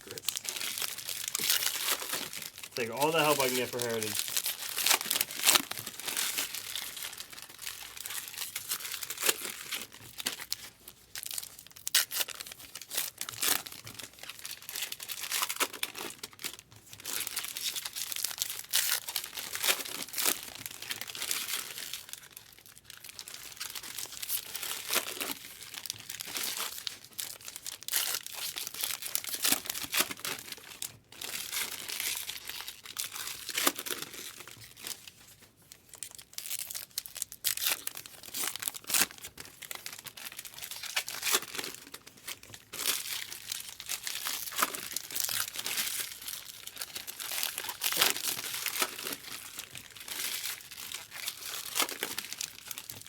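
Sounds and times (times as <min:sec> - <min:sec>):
wrappers tearing and crinkling: 0:00.0 - 0:53.0
cards being handled: 0:02.8 - 0:04.2.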